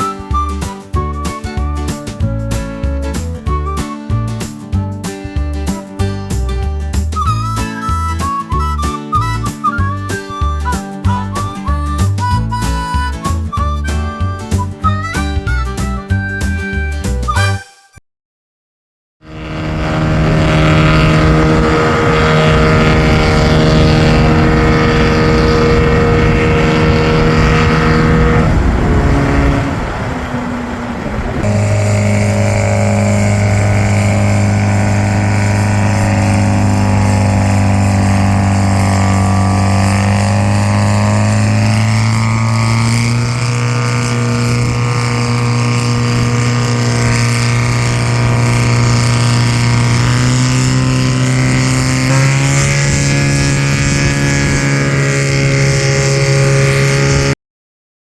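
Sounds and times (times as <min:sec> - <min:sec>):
deep steady drone: 0:19.3 - 0:57.4
farm machinery engine running: 0:19.3 - 0:57.4.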